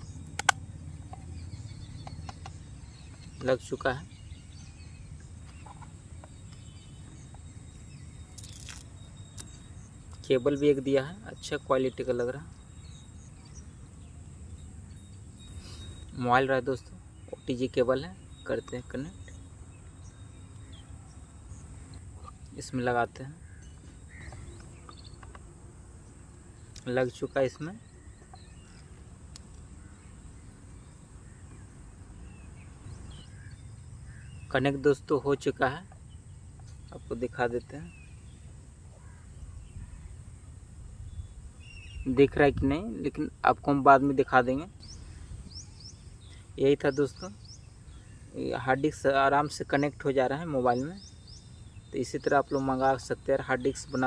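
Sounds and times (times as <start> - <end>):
faint bird chirps: 0.0 - 54.0
low steady background noise: 0.0 - 54.0
sharp click: 0.3 - 0.6
light plastic clicks: 0.3 - 1.2.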